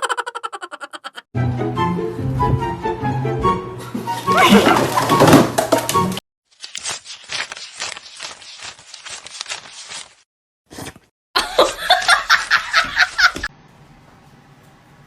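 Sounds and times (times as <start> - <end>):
people laughing: 0.0 - 1.3, 11.4 - 13.5.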